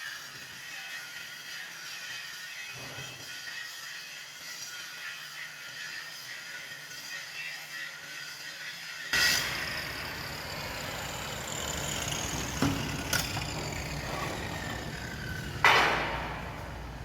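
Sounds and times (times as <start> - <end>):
welding arc crackling: 9.2 - 17.0.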